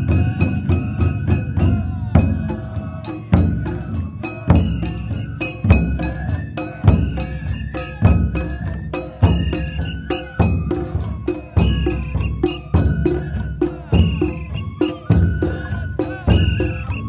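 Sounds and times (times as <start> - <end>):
bamboo flute melody: 0.0 - 17.0
large taiko drum: 0.0 - 17.0.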